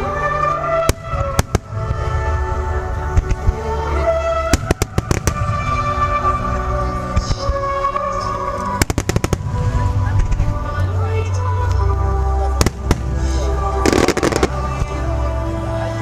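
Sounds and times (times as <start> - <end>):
music: 0.0 - 16.0
fireworks bursting: 4.5 - 5.9, 8.7 - 10.4, 13.8 - 15.0.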